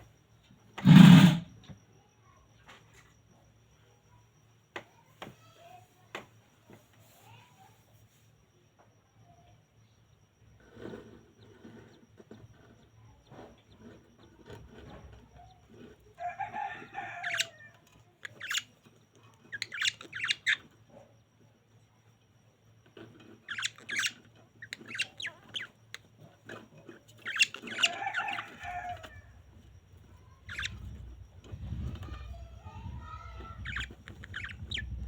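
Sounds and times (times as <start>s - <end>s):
budgerigars chirping and squawking: 17.2s - 17.5s, 27.2s - 29.1s, 30.5s - 30.8s, 33.0s - 35.0s.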